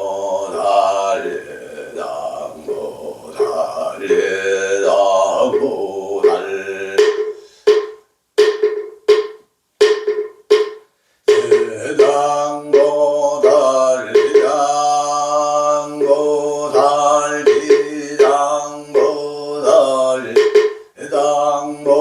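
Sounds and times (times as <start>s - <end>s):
man chanting: 0.0s - 7.0s, 11.3s - 22.0s
wooden fish strikes: 7.0s - 12.2s.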